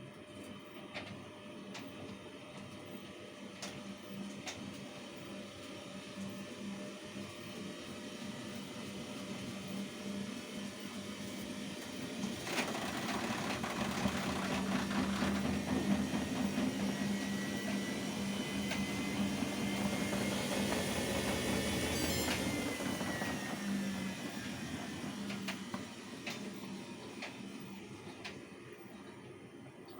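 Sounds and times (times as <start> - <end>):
washing machine motor humming: 5.9 - 29.9.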